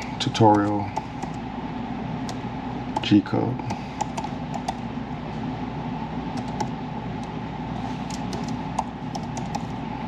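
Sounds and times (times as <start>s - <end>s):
low mechanical hum: 0.0s - 10.0s
keyboard and mouse clicks: 4.0s - 4.8s, 6.4s - 7.3s, 8.0s - 9.7s.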